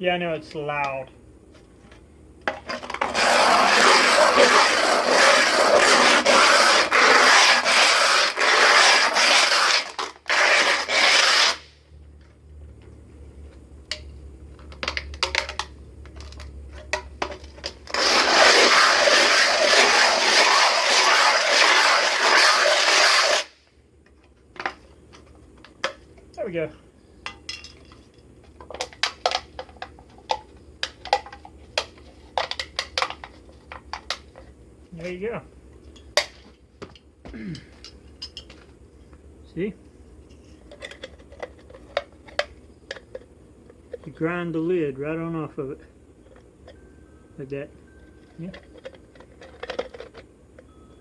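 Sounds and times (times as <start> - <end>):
metal can scraping on a block: 2.7 - 11.7, 17.9 - 23.5.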